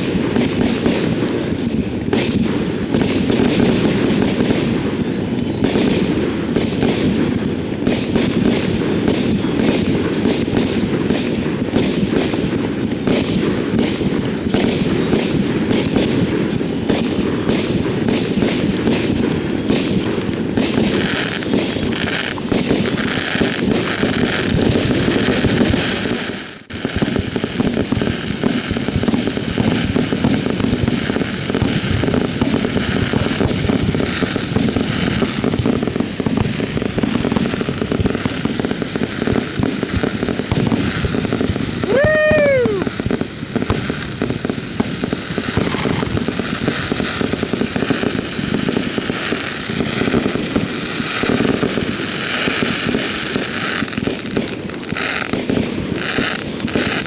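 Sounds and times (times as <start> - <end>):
firework whistle: 0.0 - 57.0
fireworks crackling and popping: 0.0 - 57.0.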